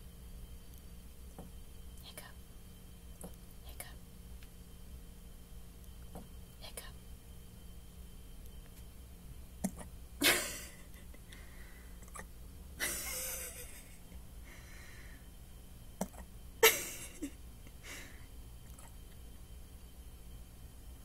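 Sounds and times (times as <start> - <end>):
sharp hiccups: 9.6 - 9.9, 12.0 - 12.3, 16.0 - 16.3
soft breathy sound: 11.3 - 12.2, 14.4 - 15.3.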